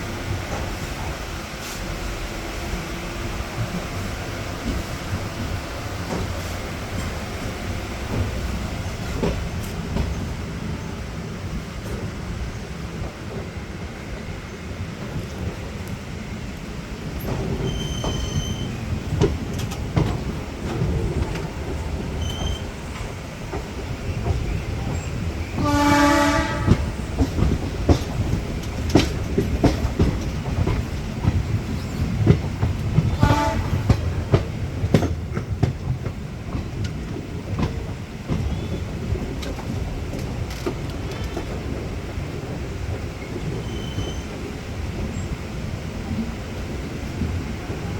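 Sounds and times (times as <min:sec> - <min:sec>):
train rumbling: 0:00.0 - 0:47.9
wheels clicking over rail joints: 0:15.0 - 0:45.4
train horn: 0:25.6 - 0:27.1, 0:33.0 - 0:34.2.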